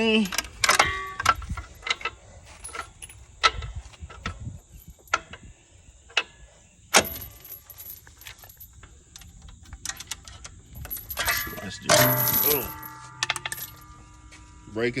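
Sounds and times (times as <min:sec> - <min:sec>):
metal clinks and clanks: 0:00.0 - 0:05.5, 0:06.9 - 0:14.3.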